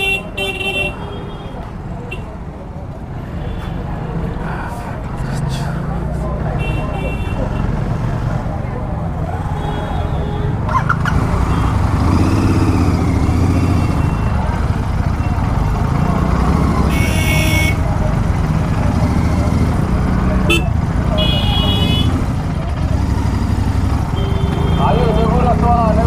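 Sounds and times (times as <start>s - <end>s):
motorcycle engine running: 10.9s - 26.0s.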